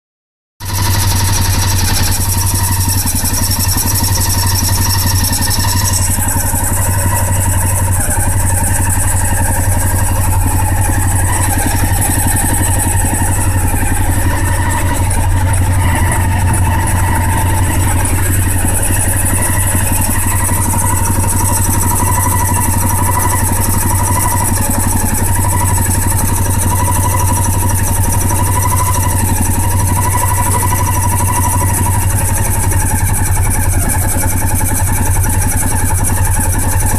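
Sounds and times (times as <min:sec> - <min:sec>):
motorcycle engine idling: 0:00.6 - 0:36.9.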